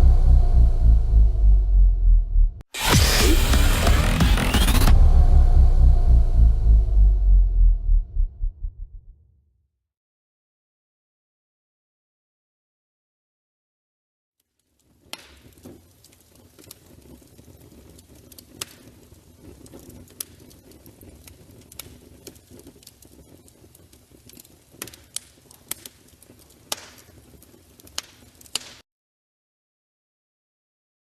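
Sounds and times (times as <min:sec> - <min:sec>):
fire crackling: 0:14.4 - 0:28.8
fire popping: 0:14.4 - 0:28.8.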